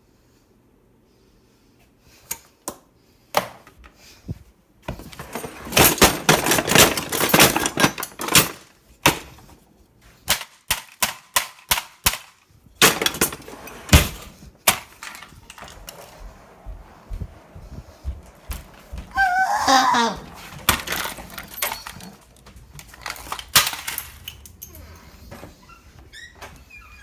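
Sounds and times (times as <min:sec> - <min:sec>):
hard objects knocking and banging: 0:04.9 - 0:09.6, 0:10.3 - 0:25.4.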